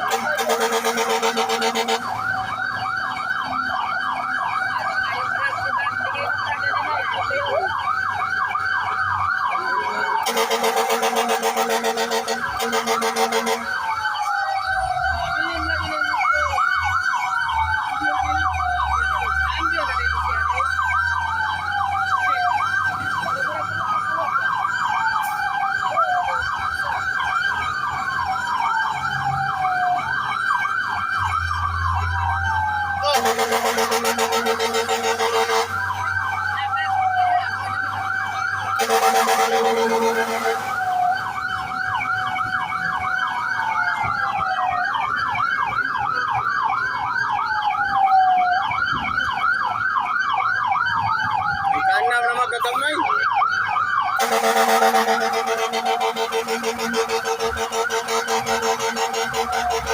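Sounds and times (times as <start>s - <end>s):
loud horn blaring: 0.0s - 2.4s, 9.6s - 14.3s, 32.9s - 36.0s, 38.7s - 41.1s, 54.1s - 59.9s
siren wailing: 0.0s - 59.9s
siren yelping: 0.0s - 59.9s.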